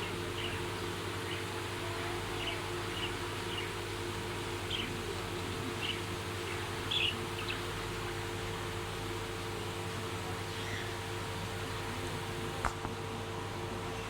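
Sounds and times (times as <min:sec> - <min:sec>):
steady low hum: 0:00.0 - 0:14.0
budgerigars chirping: 0:05.8 - 0:07.7.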